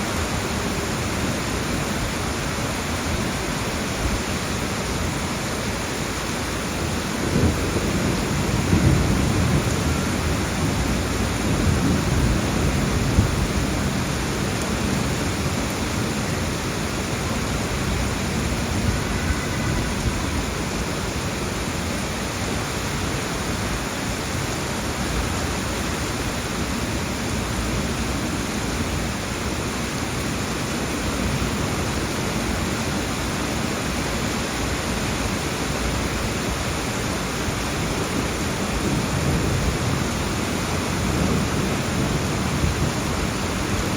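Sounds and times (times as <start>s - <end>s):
steady rain falling: 0.0s - 43.9s
low rumble of thunder: 7.0s - 15.0s, 38.7s - 43.8s.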